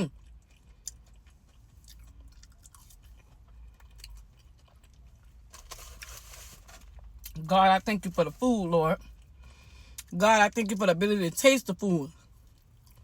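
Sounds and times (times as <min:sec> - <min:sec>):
chewing with small crunches: 0:00.0 - 0:08.1, 0:08.9 - 0:10.2, 0:12.1 - 0:13.0.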